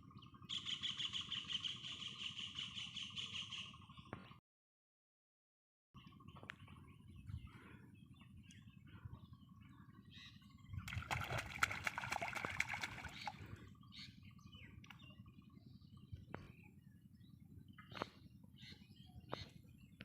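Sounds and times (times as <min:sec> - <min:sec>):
birds chirping: 0:00.0 - 0:04.4, 0:06.0 - 0:20.0
low background rumble: 0:06.0 - 0:20.0
water splashing and sloshing: 0:10.8 - 0:13.6.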